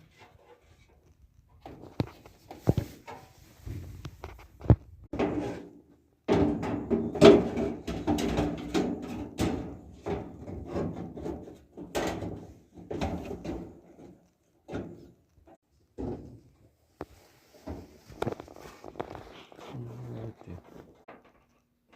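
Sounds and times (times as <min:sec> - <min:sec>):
dryer parts knocking and clunking: 0:04.6 - 0:16.6
rough scraping: 0:17.2 - 0:21.1.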